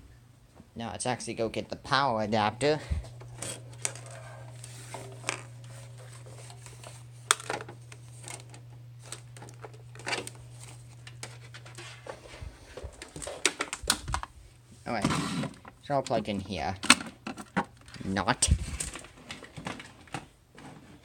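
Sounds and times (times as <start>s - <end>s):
steady low hum: 0.0s - 19.2s
scratchy rustling: 3.1s - 9.4s.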